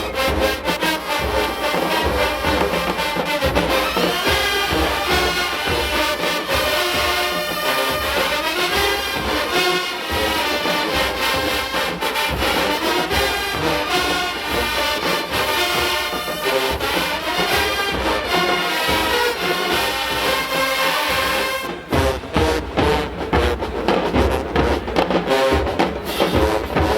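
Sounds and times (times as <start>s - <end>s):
drumline beat: 0.0s - 26.9s
marching band brass: 0.0s - 26.9s.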